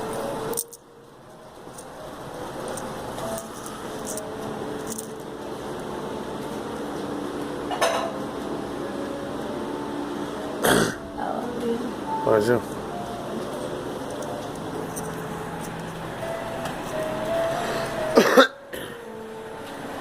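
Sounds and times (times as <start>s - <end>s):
room noise: 0.0s - 20.0s
light clicks and clinks: 2.7s - 5.3s.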